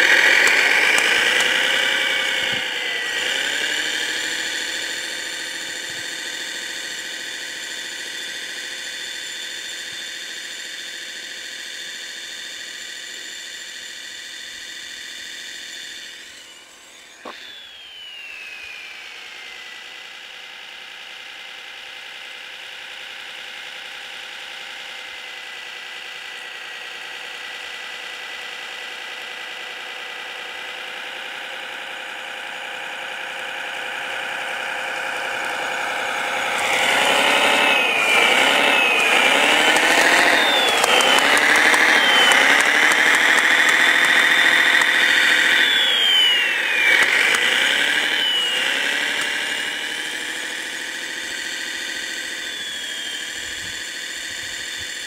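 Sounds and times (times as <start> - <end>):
radio-controlled model motor whine: 0.0 - 55.0
click: 0.4 - 1.6, 39.7 - 45.0, 49.1 - 49.4.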